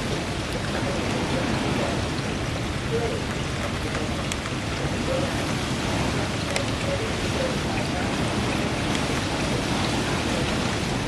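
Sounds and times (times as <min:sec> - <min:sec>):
heavy rain falling: 0:00.0 - 0:11.0
raindrops ticking: 0:00.0 - 0:11.0
strong wind: 0:00.0 - 0:11.0.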